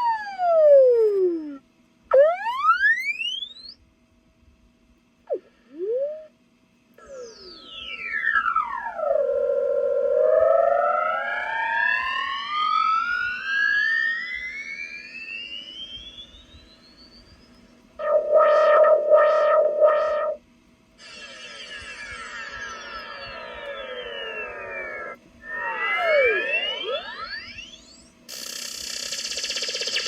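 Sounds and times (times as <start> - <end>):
electronic tone sweeping: 0.0 - 3.8, 7.0 - 20.4, 21.0 - 30.0
loud warbling burst: 18.0 - 20.4, 21.0 - 30.0.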